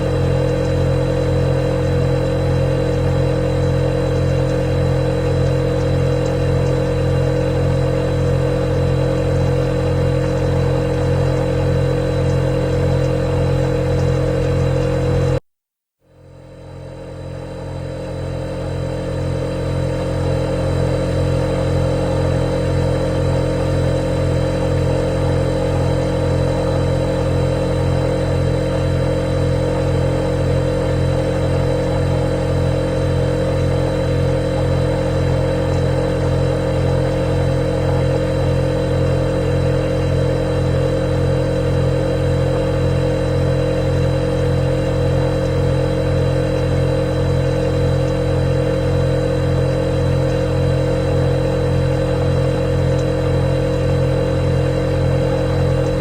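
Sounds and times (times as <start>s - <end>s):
refrigerator compressor humming: 0.0s - 15.4s, 16.0s - 56.0s.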